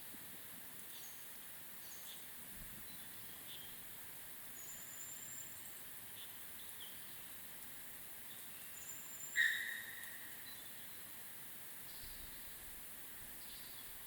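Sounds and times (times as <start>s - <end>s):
loud clear bird call: 9.2s - 10.6s
high whistled bird notes: 9.3s - 10.2s.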